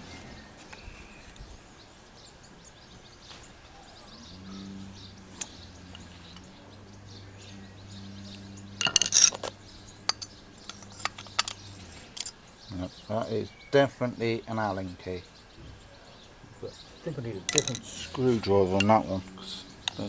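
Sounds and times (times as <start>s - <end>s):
birds chirping: 0.0s - 20.0s
low steady hum: 0.0s - 20.0s
hand tools clinking and clattering: 5.1s - 6.6s, 8.2s - 12.4s, 17.4s - 19.2s.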